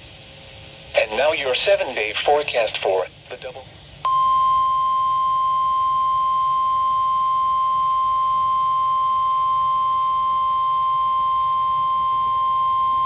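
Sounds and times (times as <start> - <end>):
steady alarm tone: 4.1 - 13.0.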